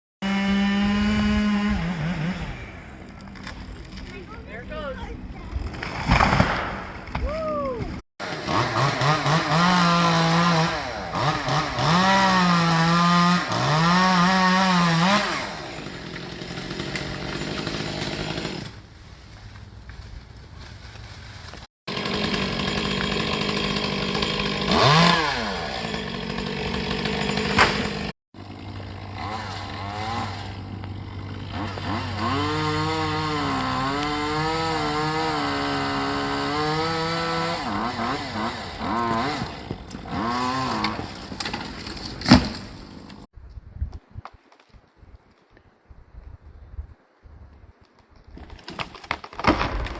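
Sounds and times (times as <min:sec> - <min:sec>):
chainsaw cutting wood: 0:00.2 - 0:04.0, 0:08.2 - 0:18.8, 0:21.6 - 0:43.3
sharp wood crack: 0:03.0 - 0:04.2, 0:05.6 - 0:10.5, 0:26.2 - 0:30.2, 0:30.8 - 0:43.3, 0:47.8 - 0:49.9.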